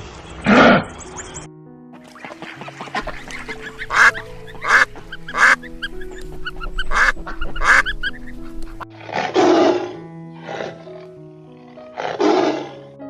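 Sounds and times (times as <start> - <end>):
background music: 0.0 - 13.0
waterfowl harsh calls: 2.2 - 8.1.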